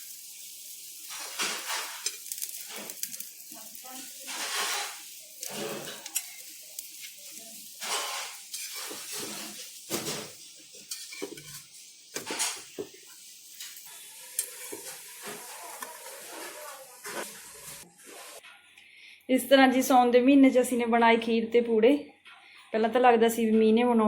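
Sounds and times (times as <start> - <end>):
batter sizzling in oil: 0.0 - 18.4
utensil scraping griddle: 0.8 - 18.4.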